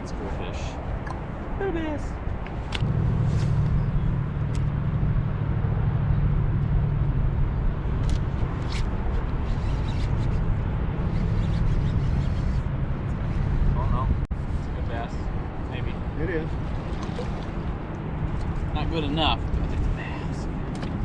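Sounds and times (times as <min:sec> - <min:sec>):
boat motor humming: 0:02.8 - 0:13.3, 0:15.4 - 0:19.7.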